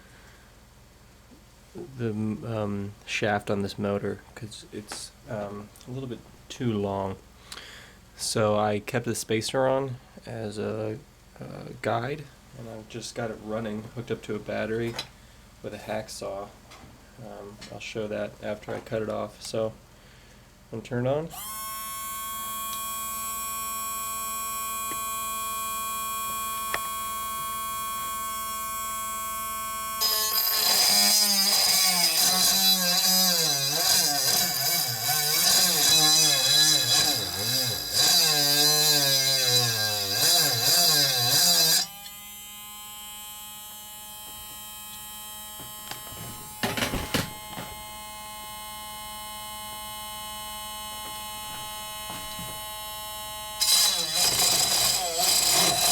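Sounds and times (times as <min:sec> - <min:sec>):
small electric motor whining: 0:21.3 - 0:55.9
hacksaw blade grinding on shaft: 0:30.0 - 0:42.2, 0:53.6 - 0:55.9.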